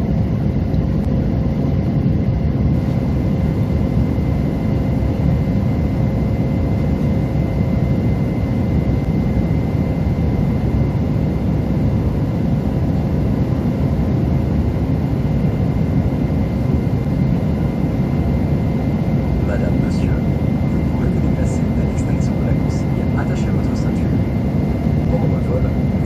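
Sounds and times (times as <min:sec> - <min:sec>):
aircraft engine rumble: 0:00.0 - 0:26.0.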